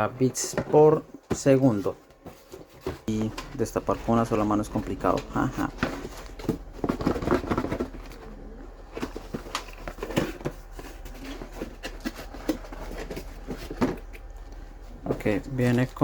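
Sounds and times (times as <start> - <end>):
cardboard box being opened: 2.3 - 14.2.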